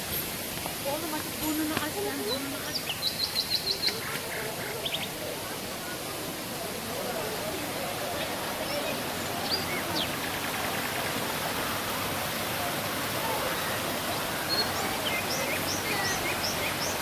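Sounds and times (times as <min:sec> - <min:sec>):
waterfall rushing: 0:00.0 - 0:17.0
birds chirping: 0:00.9 - 0:05.4, 0:08.0 - 0:10.6, 0:13.8 - 0:17.0.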